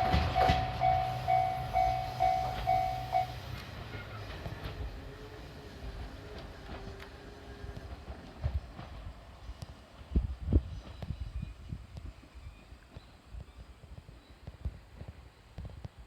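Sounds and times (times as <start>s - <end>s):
level-crossing warning bell ringing: 0.0s - 3.5s
diesel train rumbling past: 0.0s - 11.7s.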